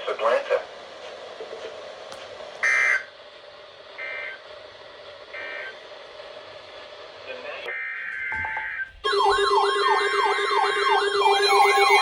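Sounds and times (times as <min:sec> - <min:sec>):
digital data tone bursts: 0:09.1 - 0:12.0.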